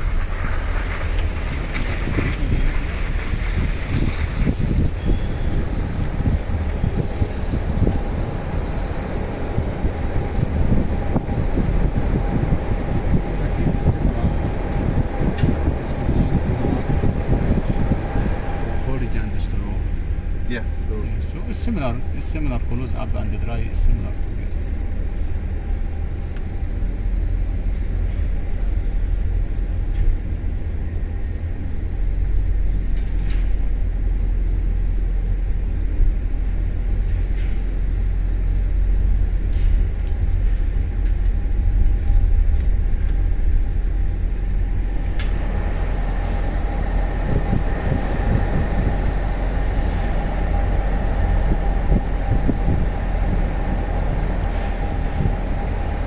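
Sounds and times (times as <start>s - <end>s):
low mechanical rumble: 0.0s - 56.0s.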